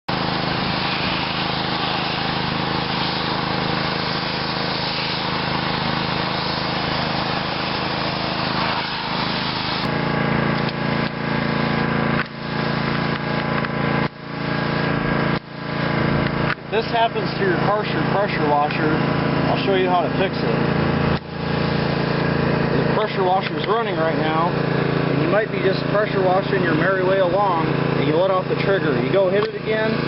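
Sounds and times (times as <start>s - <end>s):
pressure washer spray hiss: 0.1s - 9.9s, 10.6s - 13.6s, 14.3s - 23.2s
pressure washer machine hum: 0.1s - 30.0s.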